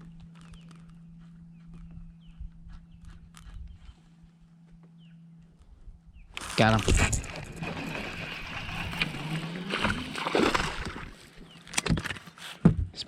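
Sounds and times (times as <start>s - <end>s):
steady low hum: 0.0s - 11.8s
water splashing: 6.4s - 11.4s.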